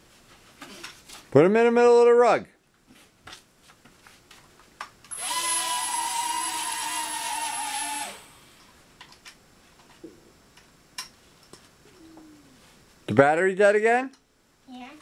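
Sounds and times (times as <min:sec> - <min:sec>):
toy drone motors whining: 0:05.1 - 0:08.4.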